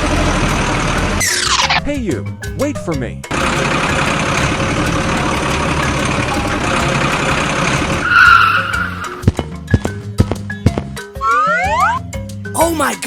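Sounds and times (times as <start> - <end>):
vehicle rumbling over rough ground: 0.0 - 2.6, 3.2 - 11.2
skidding screech: 1.2 - 1.8, 7.5 - 9.3
light music with plucked notes: 1.8 - 7.8.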